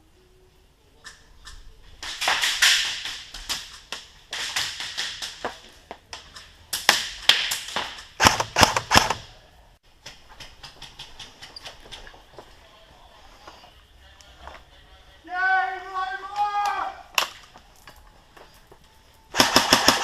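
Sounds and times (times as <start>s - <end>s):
airsoft guns firing: 2.0s - 5.6s, 6.8s - 9.3s, 19.3s - 20.0s.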